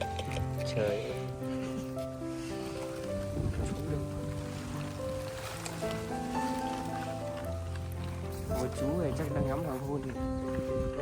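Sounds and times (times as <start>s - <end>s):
background music of sustained notes: 0.0s - 11.0s.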